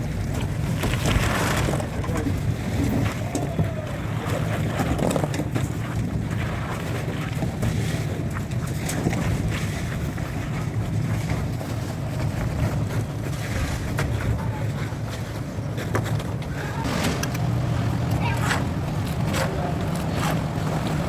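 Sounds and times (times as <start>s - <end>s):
short knocks and scrapes: 15.8s - 21.0s
small engine running: 16.8s - 21.0s.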